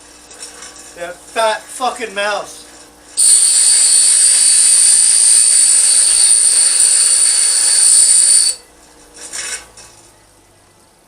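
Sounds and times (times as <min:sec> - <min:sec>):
power grinder grinding steel: 0:03.2 - 0:08.6.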